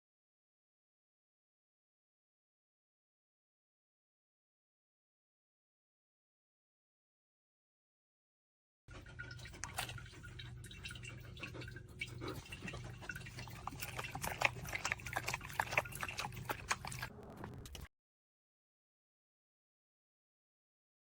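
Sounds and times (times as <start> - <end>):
fountain pump hum: 8.9 - 17.1
dog lapping water: 8.9 - 17.9.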